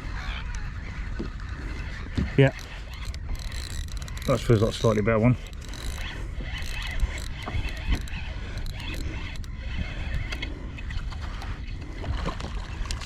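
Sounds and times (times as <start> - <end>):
wind: 0.0 - 13.0
water: 0.7 - 13.0
fishing reel ratchet clicking: 2.5 - 9.6.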